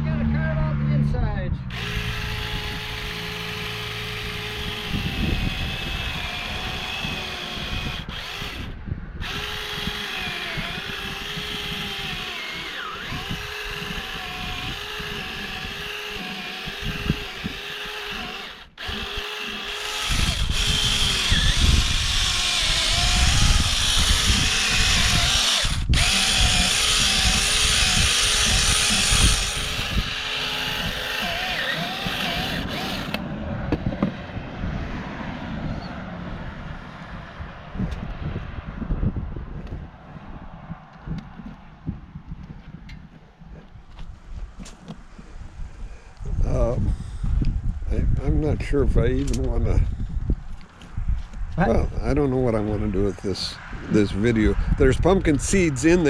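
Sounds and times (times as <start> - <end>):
small chainsaw cutting: 1.7 - 33.2.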